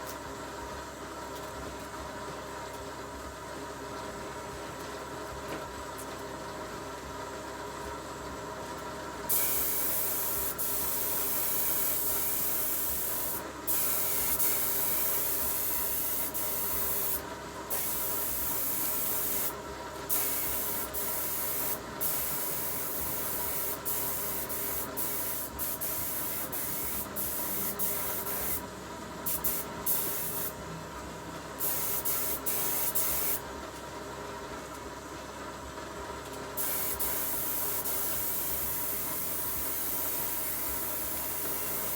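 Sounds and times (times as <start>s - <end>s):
steady machine hum: 7.3s - 41.9s
power tool hissing on sheet metal: 9.3s - 28.6s.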